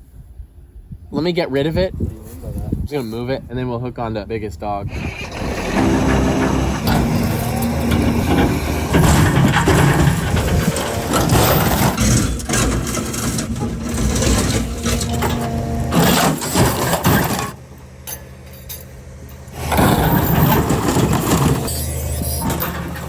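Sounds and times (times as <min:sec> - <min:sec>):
heavy machine engine running: 0:04.8 - 0:23.0
loud crunching and scraping: 0:04.9 - 0:23.0.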